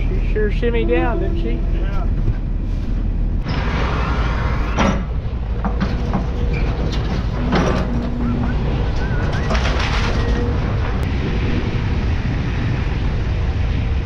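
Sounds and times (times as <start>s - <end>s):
diesel excavator engine running: 0.0s - 14.0s
wood cracking and crashing: 9.0s - 11.0s.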